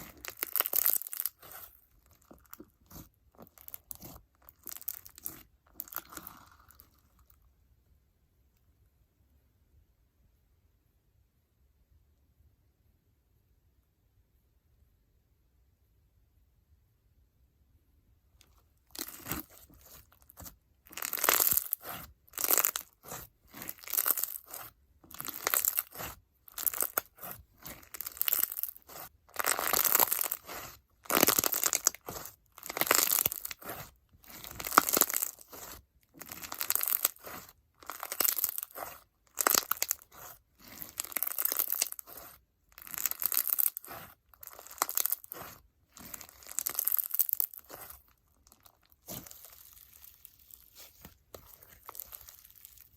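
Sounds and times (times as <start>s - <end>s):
slime crackling and popping: 0.0s - 7.0s, 18.9s - 52.9s.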